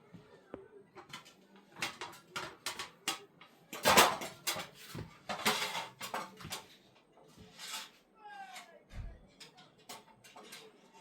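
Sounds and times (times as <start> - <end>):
pots and dishes clattering: 1.0 - 8.0, 9.3 - 11.0.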